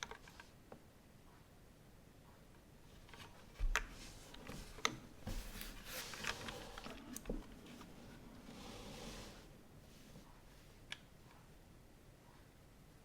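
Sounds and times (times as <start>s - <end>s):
brushing rustling noise: 3.5s - 10.8s.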